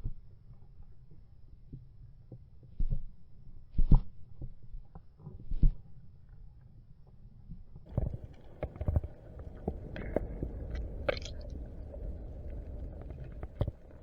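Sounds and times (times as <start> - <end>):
low steady rumble: 7.9 - 14.0.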